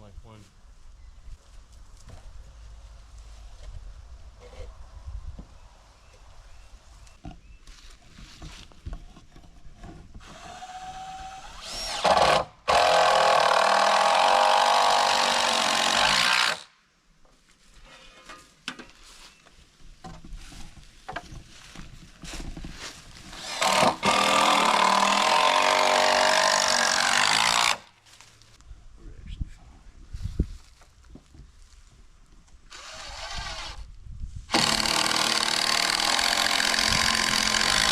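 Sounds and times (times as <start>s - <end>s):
power drill whine: 10.2s - 16.6s, 32.7s - 33.8s, 34.5s - 37.9s.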